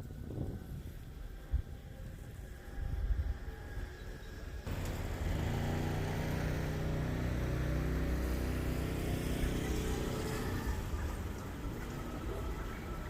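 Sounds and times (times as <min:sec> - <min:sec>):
motor engine running: 0:04.7 - 0:11.0.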